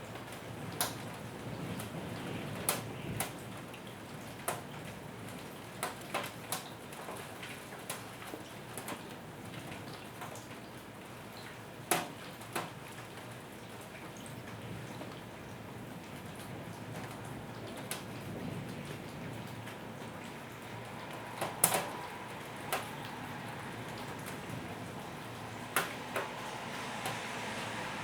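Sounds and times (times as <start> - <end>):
light rain hissing: 16.7 - 28.0.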